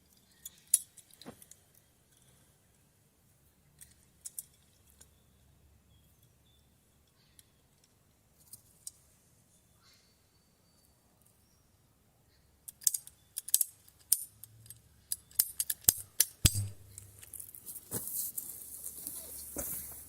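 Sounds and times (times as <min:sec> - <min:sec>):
sharp clicks and snaps: 0:12.7 - 0:17.6.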